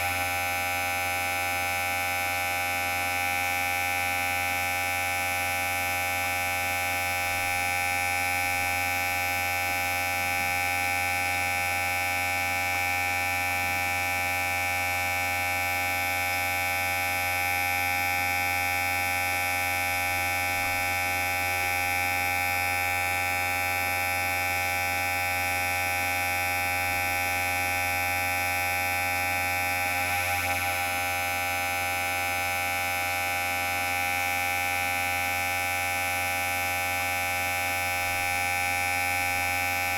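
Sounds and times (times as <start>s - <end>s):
electric hair clipper buzzing: 6.8s - 11.4s, 15.7s - 32.7s, 37.8s - 39.9s.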